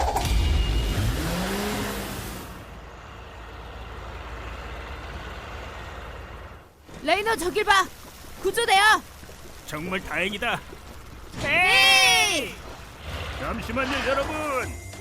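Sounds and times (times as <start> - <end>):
cartoon vehicle engine revving: 0.0 - 2.7.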